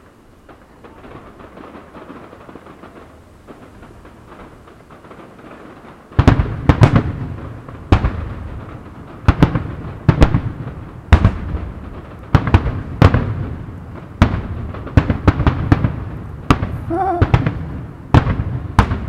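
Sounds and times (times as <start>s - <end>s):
background noise: 0.0s - 19.0s
fireworks shells bursting bangs: 0.0s - 19.0s.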